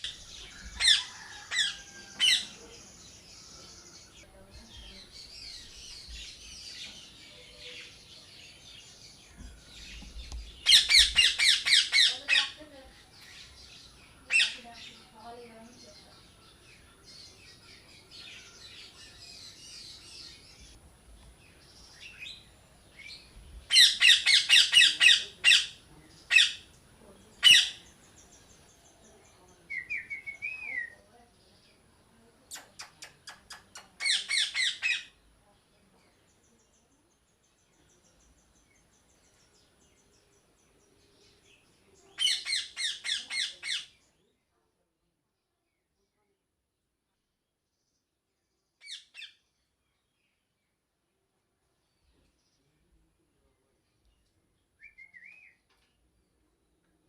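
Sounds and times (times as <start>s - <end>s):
faint chatter: 0.0s - 50.5s, 51.1s - 57.0s
parrots squawking: 0.8s - 2.5s, 10.6s - 12.6s, 23.7s - 26.6s, 27.4s - 27.8s, 34.0s - 35.1s.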